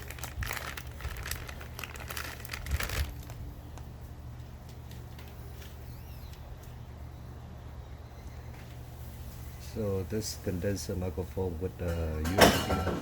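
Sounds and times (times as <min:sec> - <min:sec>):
rustling crinkling handling noise: 0:00.0 - 0:05.8
steady low hum: 0:00.0 - 0:12.3.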